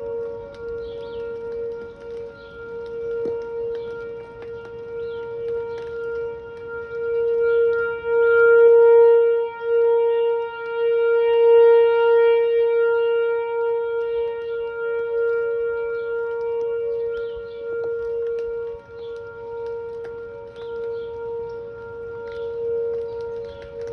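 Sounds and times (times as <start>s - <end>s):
warning siren steady tone: 0.0s - 23.9s.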